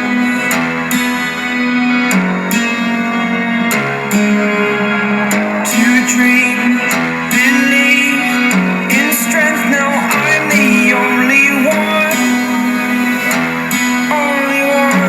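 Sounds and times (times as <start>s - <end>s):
plucked guitar music: 0.0s - 15.0s.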